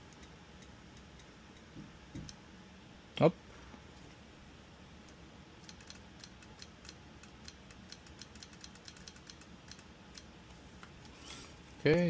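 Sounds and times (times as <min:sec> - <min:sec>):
rapid light clicking: 0:00.0 - 0:02.4, 0:05.0 - 0:10.3.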